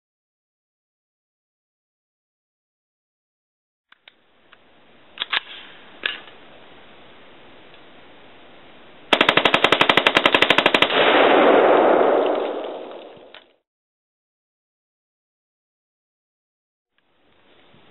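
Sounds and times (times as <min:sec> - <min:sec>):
rifle full-auto burst: 0:09.1 - 0:12.8
rolling echo of gunfire: 0:09.1 - 0:13.3.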